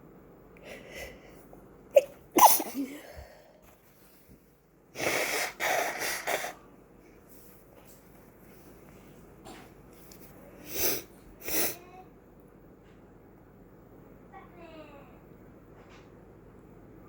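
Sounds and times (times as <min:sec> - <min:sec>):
person sneezing: 0:02.0 - 0:03.1.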